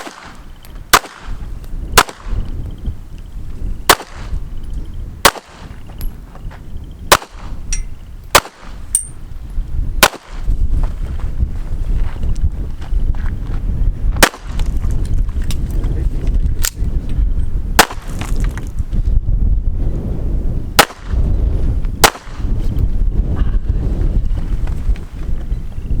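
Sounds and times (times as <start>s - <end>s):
pistol shots: 0.0s - 1.4s, 2.0s - 2.4s, 3.9s - 4.4s, 5.2s - 5.7s, 7.1s - 7.6s, 8.3s - 9.1s, 10.0s - 10.4s, 14.2s - 14.6s, 17.8s - 18.1s, 20.8s - 21.1s, 22.0s - 22.4s.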